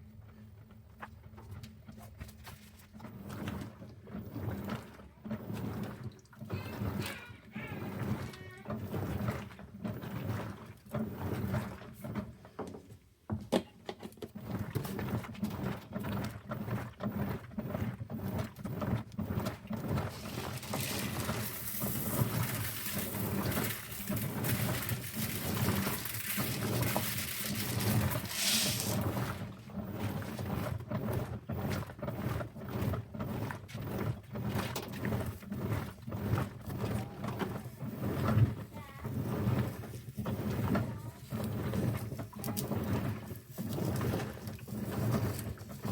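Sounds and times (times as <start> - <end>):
crackling chemical reaction: 19.3 - 32.2.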